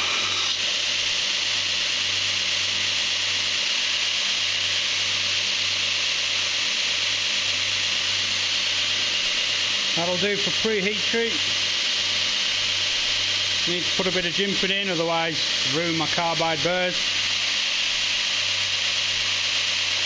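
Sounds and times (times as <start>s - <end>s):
belt grinder grinding hiss: 0.0s - 0.7s
motor low hum: 0.0s - 20.0s.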